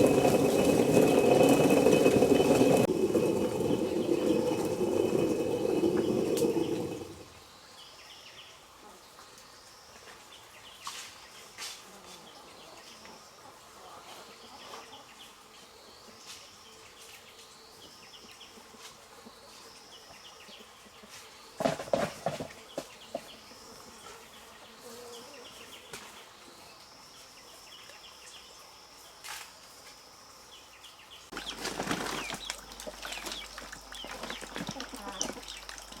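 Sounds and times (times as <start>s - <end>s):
corn mill grinding rumble: 0.0s - 7.3s, 31.3s - 36.0s.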